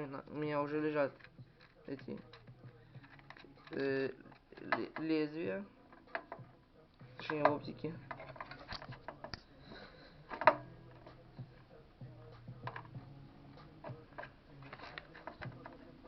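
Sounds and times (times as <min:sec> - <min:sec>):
small hard parts clicking: 0:01.1 - 0:05.3, 0:05.9 - 0:06.5, 0:07.2 - 0:11.7, 0:12.3 - 0:13.0, 0:13.6 - 0:16.0.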